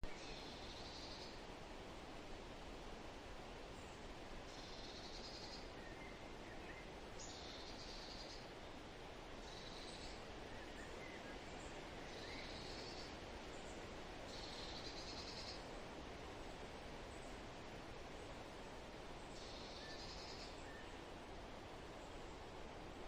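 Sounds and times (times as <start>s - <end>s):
steady background hiss: 0.0s - 23.0s
songbird trilling: 19.4s - 20.9s.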